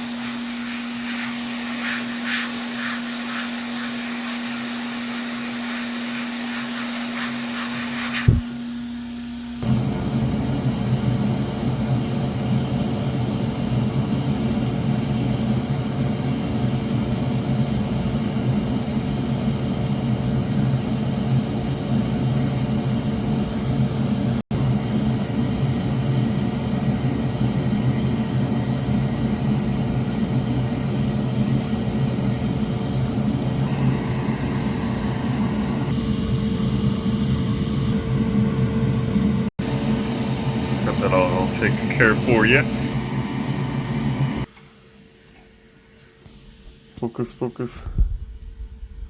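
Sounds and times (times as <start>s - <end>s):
electric blower motor whirring: 0.0s - 14.1s, 21.9s - 44.5s.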